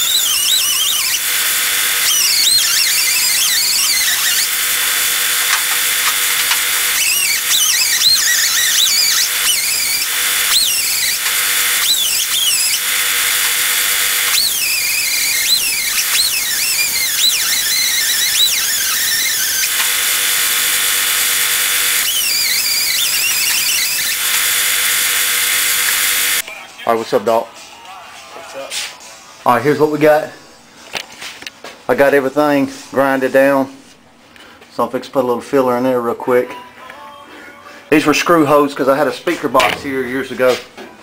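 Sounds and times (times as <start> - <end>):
high-pitched squeals: 0.0 - 26.4
power sander hissing on sheet metal: 0.0 - 26.4.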